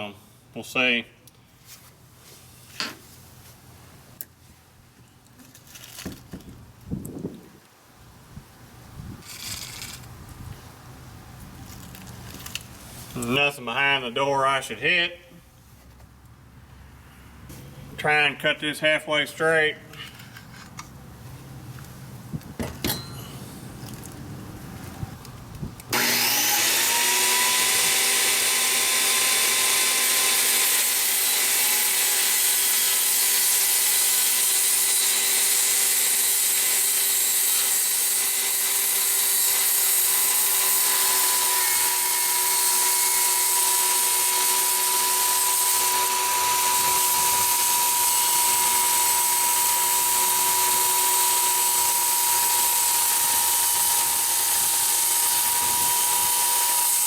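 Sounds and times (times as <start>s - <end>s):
electric power saw cutting: 25.9s - 57.0s.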